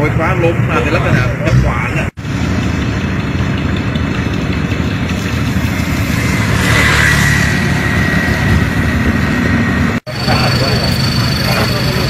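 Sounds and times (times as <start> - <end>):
engine idling: 2.2 - 12.0
thin high whine: 5.6 - 12.0.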